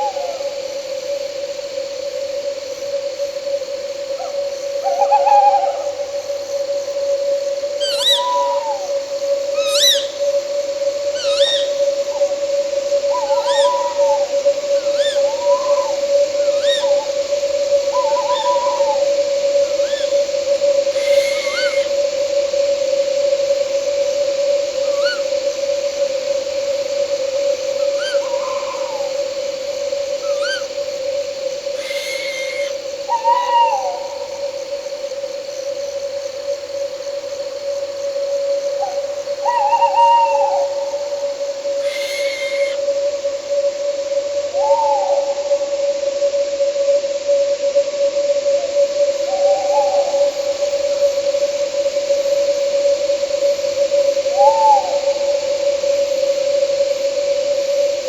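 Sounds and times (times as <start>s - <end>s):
owl hooting: 0.0s - 1.1s, 4.1s - 35.1s, 38.3s - 45.7s, 49.1s - 53.0s, 53.7s - 55.6s
night insects droning: 0.0s - 58.0s
wind hiss: 0.0s - 58.0s
hissing whistle: 7.8s - 8.9s, 9.5s - 10.4s, 11.0s - 22.4s, 27.7s - 29.3s, 30.0s - 30.8s, 31.7s - 34.2s, 41.7s - 43.0s.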